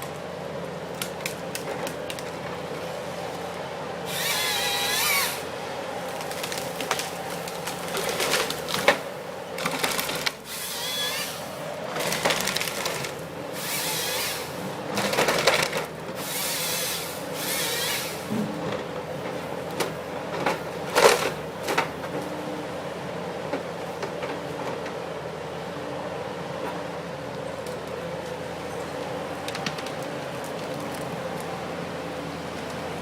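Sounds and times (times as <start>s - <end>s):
machine engine and hydraulics drone: 0.0s - 33.0s
wood cracking and breaking: 6.1s - 10.4s, 11.9s - 13.3s.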